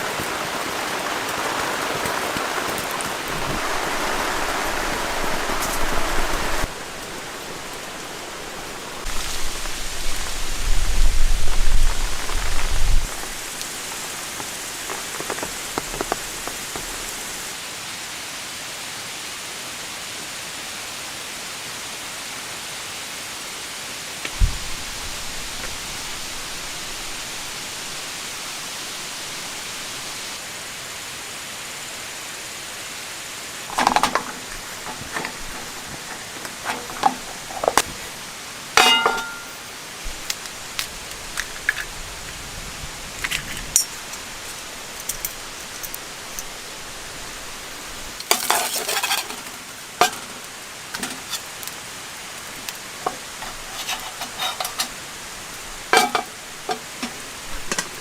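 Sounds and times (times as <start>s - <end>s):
rain hiss: 0.0s - 58.0s
ringing clinks and knocks: 38.8s - 39.6s.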